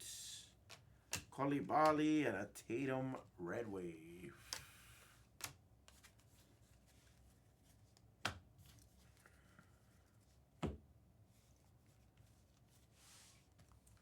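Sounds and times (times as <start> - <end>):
trading cards tapping: 0.7 - 2.1.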